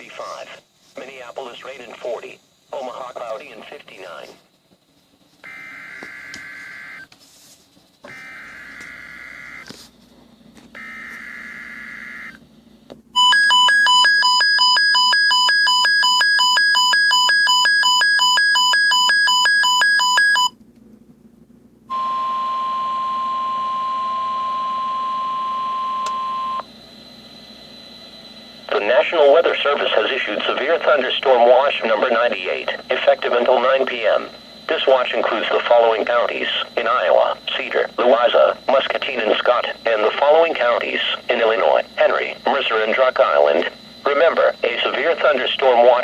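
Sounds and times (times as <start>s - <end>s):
steady warning tone: 0.0s - 7.1s, 8.0s - 20.5s, 21.9s - 46.0s
rapid alarm beeping: 5.4s - 7.1s, 8.0s - 9.7s, 10.8s - 12.4s, 13.2s - 20.5s, 21.9s - 46.0s.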